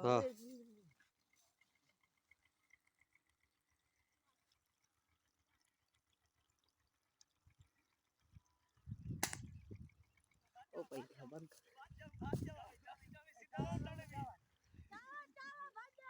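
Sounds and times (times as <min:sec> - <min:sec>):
sharp crack: 0:09.2 - 0:09.5.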